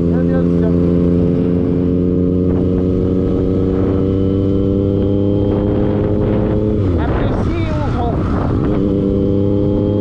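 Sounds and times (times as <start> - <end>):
vehicle engine running: 0.0 - 10.0.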